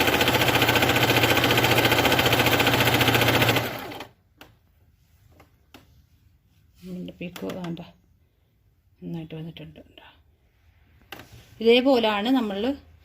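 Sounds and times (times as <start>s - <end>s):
electric sewing machine stitching: 0.0s - 4.2s.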